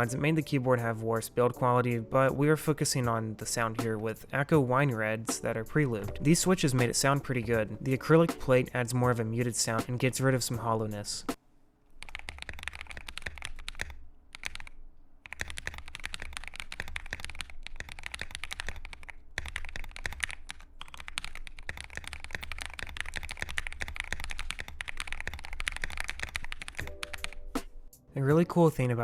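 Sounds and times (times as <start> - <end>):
mechanical keyboard typing: 12.0 - 27.7.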